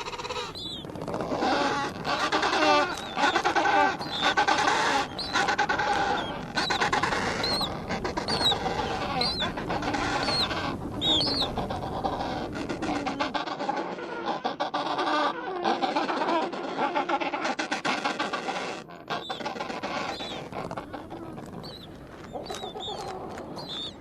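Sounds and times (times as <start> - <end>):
lower pitched animal calls: 0.0 - 13.4, 18.4 - 24.0.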